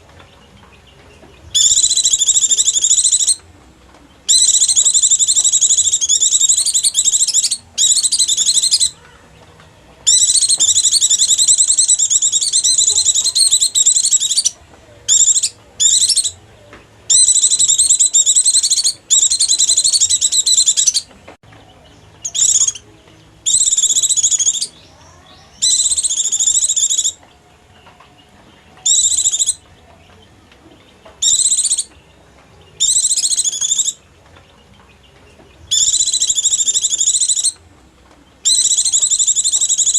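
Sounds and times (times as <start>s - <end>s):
white-eye twittering: 1.5s - 3.4s, 4.3s - 9.0s, 10.1s - 16.4s, 17.1s - 21.1s, 22.2s - 22.8s, 23.4s - 24.9s, 25.5s - 27.2s, 28.8s - 29.6s, 31.2s - 31.9s, 32.8s - 34.0s, 35.7s - 37.6s, 38.4s - 39.9s.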